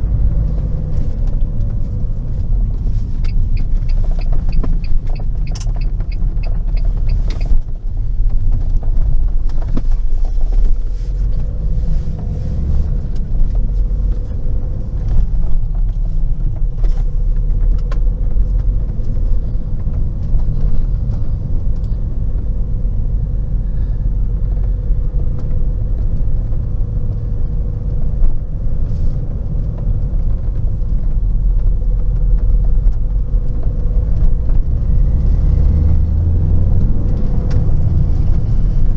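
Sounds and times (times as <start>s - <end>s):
car engine rumble: 0.0s - 38.9s
rapid ticks: 3.2s - 7.6s.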